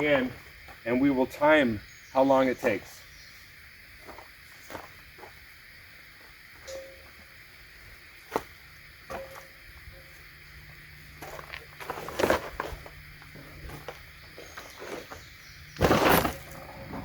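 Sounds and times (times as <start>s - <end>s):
rustling: 8.2s - 17.0s.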